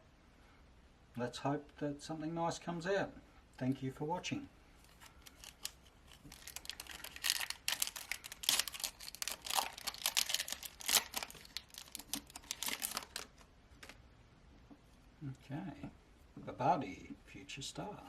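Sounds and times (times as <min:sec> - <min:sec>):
foil wrapper crinkling and tearing: 0:04.8 - 0:14.0.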